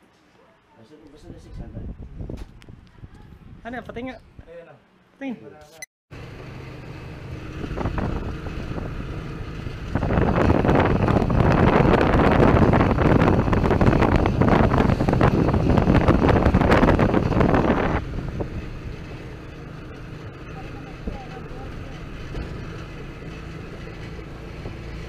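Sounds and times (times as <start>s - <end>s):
wind buffeting microphone: 1.2s - 4.4s, 7.1s - 25.0s
motor vehicle running: 6.1s - 25.0s.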